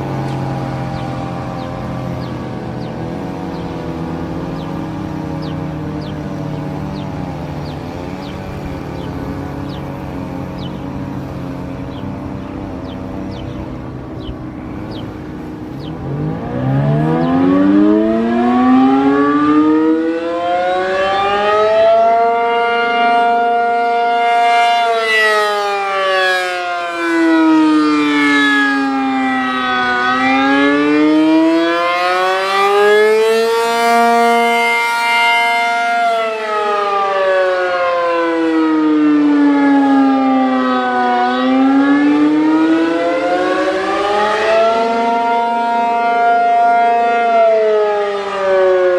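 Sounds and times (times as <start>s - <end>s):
rotating warning siren wailing: 0.0s - 48.9s.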